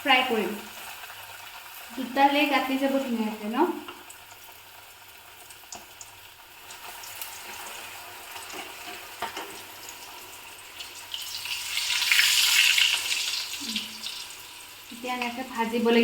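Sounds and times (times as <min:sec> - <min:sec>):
chicken sizzling in oil: 0:00.0 - 0:16.0.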